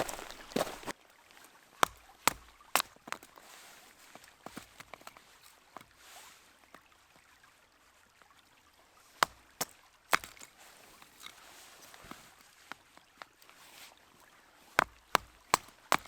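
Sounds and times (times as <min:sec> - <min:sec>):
dry sticks snapping: 0:01.8 - 0:03.4, 0:09.2 - 0:10.5, 0:14.8 - 0:16.0.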